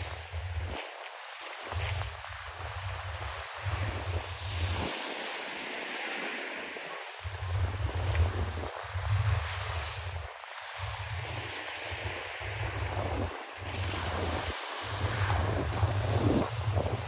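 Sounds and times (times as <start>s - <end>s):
surf washing onto shore: 0.0s - 17.0s
wind buffeting microphone: 1.7s - 4.9s, 7.2s - 17.0s.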